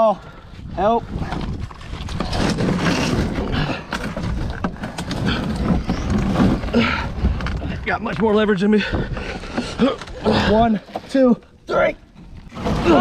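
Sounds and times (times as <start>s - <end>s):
rumbling wind: 0.0s - 13.0s
scuffling and scraping: 1.0s - 11.4s.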